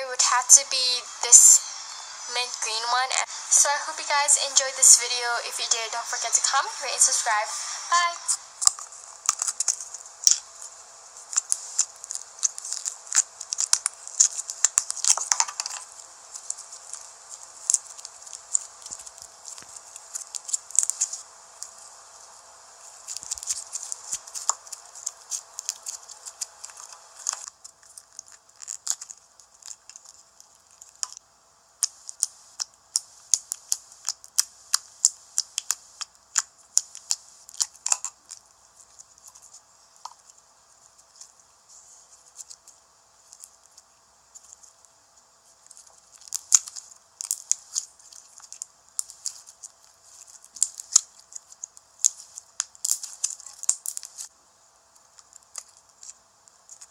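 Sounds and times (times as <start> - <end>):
slime clicking and popping: 8.6 - 10.5, 11.4 - 15.8.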